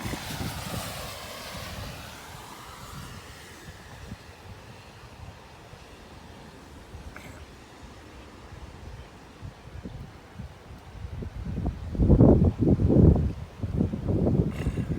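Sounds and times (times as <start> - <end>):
wind buffeting microphone: 0.0 - 5.9, 8.4 - 14.9
vehicle passing overhead: 0.0 - 6.0.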